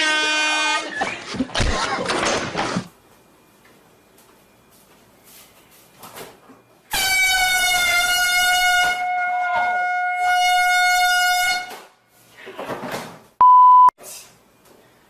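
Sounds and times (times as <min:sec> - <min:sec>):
air horn blast: 0:00.0 - 0:01.0, 0:06.9 - 0:11.9
censor beep: 0:13.4 - 0:14.0.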